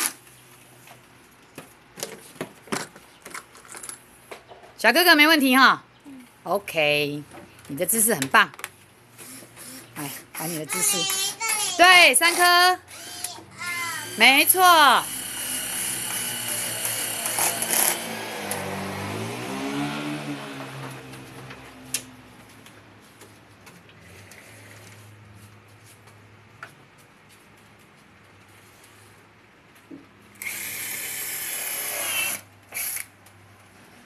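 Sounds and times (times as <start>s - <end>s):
electric drill driving screws: 9.2s - 18.8s, 30.4s - 33.1s.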